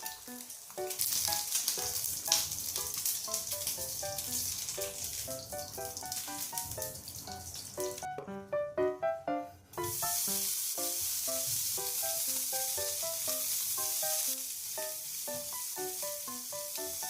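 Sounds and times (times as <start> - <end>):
food sizzling in hot oil: 0.0 - 8.1, 9.8 - 17.0
music with plucked notes: 7.8 - 10.0.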